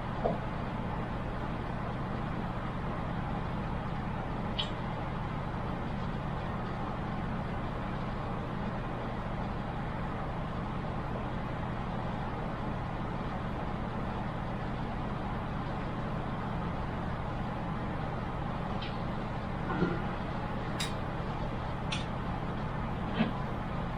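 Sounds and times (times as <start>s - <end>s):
low machine hum: 0.0s - 23.9s.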